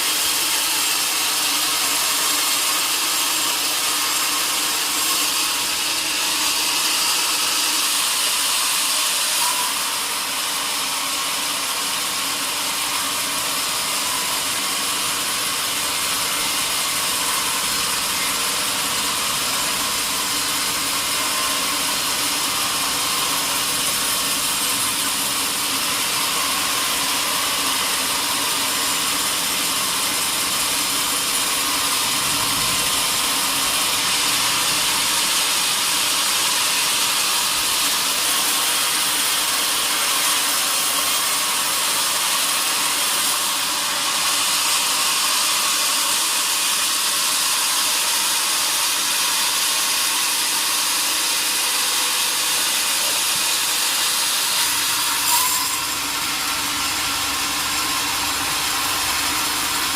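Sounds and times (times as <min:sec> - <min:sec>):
sawmill saw cutting log: 0:00.0 - 0:59.9.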